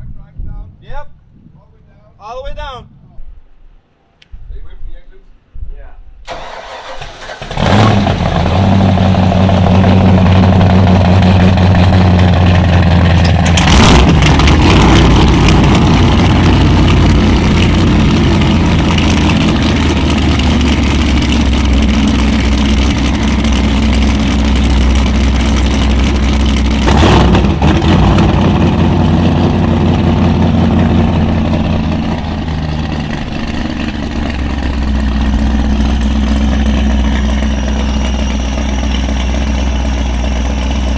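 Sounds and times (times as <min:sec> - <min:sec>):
engine revving bursts: 0:06.3 - 0:38.9
boat engines idling: 0:06.3 - 0:40.9.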